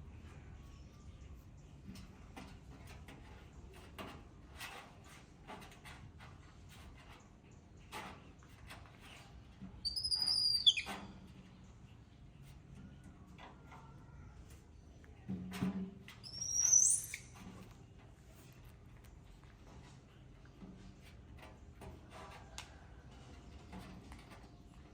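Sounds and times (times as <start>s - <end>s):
high-pitched animal squeal: 9.9s - 10.9s
faint taps and rustles: 17.3s - 24.9s.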